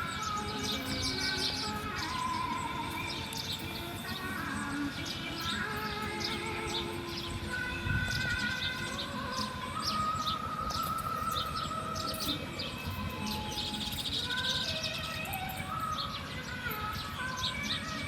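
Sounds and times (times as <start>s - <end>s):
birds chirping: 0.0s - 18.0s
outdoor background hiss: 0.0s - 18.0s
bird whistled notes: 8.1s - 16.3s.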